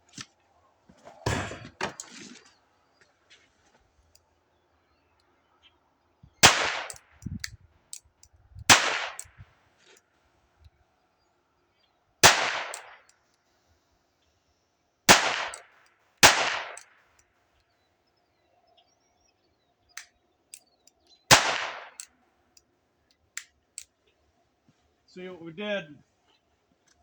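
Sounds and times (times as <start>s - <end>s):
revolver shots echoing: 21.3s - 22.0s.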